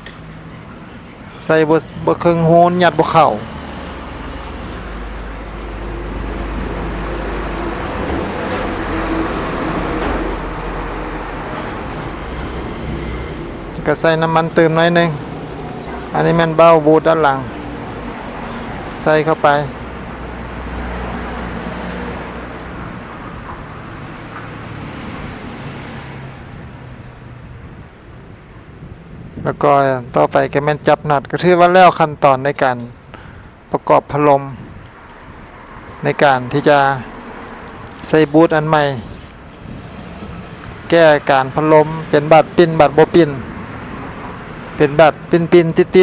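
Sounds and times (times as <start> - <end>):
background rumble and hiss: 26.4 - 46.0.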